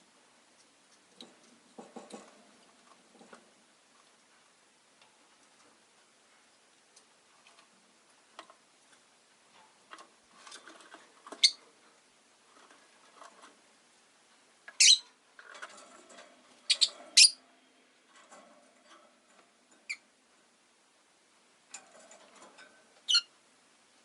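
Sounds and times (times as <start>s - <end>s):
quiet bird chatter: 11.2s - 11.6s, 16.6s - 17.7s, 23.0s - 23.4s
lovebirds chirping: 11.4s - 11.6s, 14.8s - 15.1s, 16.6s - 17.4s, 23.0s - 23.3s.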